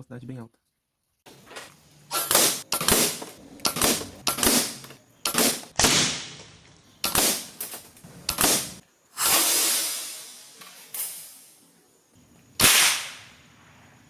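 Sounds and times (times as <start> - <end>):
air rifle shots: 2.1 - 6.4, 7.0 - 11.5, 12.6 - 13.9.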